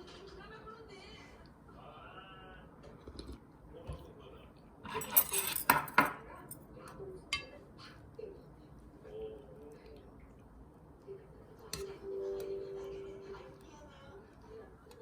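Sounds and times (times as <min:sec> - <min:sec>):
dishes and cutlery clattering: 0:04.8 - 0:06.3.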